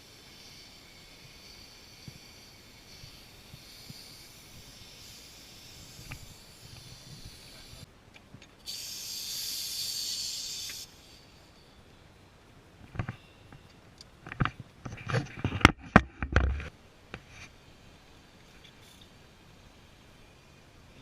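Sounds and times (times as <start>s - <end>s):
air hissing: 0.0s - 7.9s, 8.6s - 12.0s.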